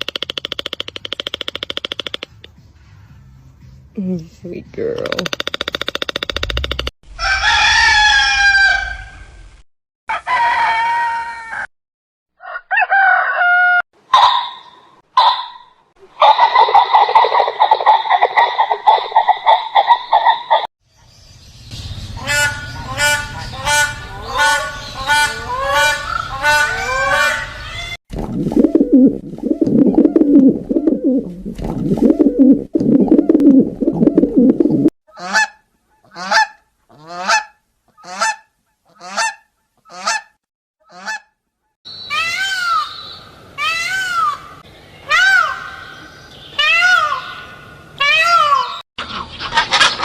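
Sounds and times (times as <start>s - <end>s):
rising-and-falling bird calls: 41.9s - 48.8s.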